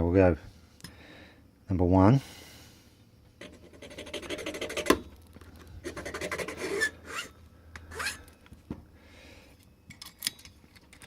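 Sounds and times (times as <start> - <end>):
file rasping on metal key: 3.4 - 5.0, 5.8 - 7.3.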